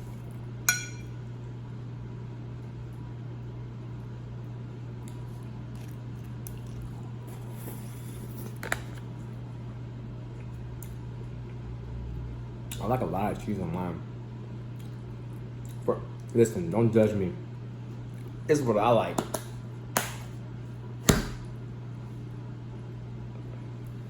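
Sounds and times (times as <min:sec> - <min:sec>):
steady low hum: 0:00.0 - 0:24.0
utensil clinking against dish: 0:00.7 - 0:01.1
squishy chewing: 0:05.0 - 0:08.6.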